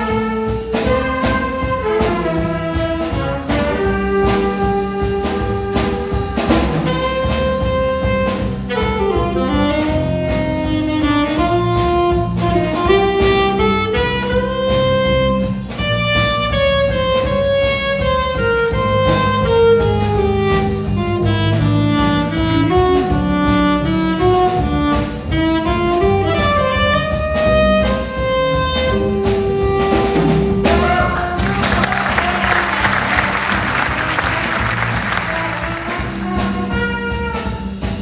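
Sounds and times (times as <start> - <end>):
bass: 0.0 - 38.0
drums with cymbals: 0.0 - 38.0
horn soloing a melody: 30.7 - 37.8
audience applause: 31.2 - 36.7.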